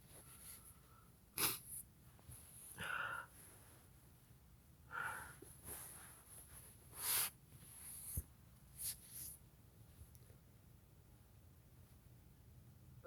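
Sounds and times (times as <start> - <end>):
faint sniffs through the nose: 0.0 - 3.9, 5.3 - 9.4.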